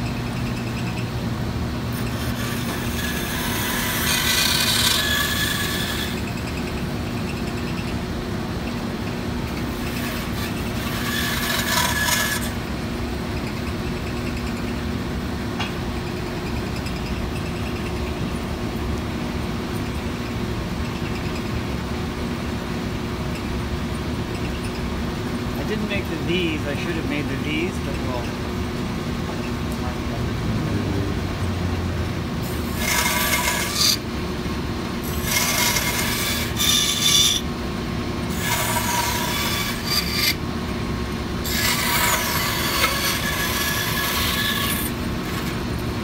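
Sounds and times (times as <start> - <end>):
bandsaw humming: 0.0 - 7.9, 9.4 - 12.8, 25.4 - 28.6, 30.3 - 46.0
saw blade cutting wood: 1.9 - 6.4, 9.6 - 12.6, 32.4 - 34.0, 35.0 - 37.5, 38.3 - 40.4, 41.4 - 45.7.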